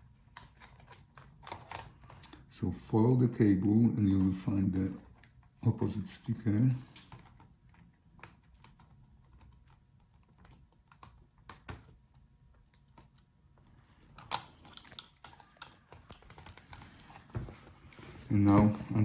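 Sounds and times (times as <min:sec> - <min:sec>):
light clicks of plastic parts: 0:06.4 - 0:19.0.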